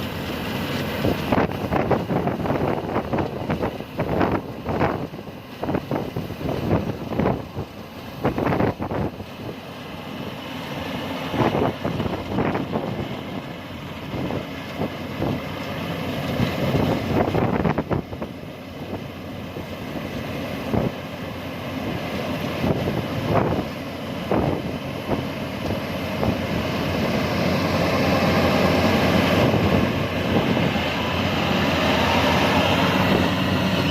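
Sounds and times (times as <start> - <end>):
farm machinery engine running: 0.0 - 33.9.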